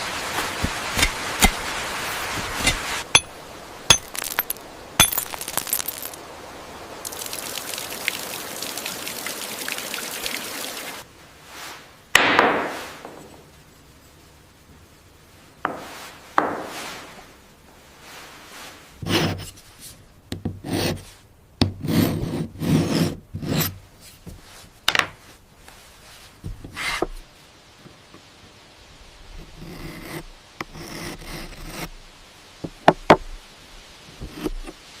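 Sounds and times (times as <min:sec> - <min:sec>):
hand tool rasping on stone: 0:01.0 - 0:01.6, 0:02.6 - 0:03.3.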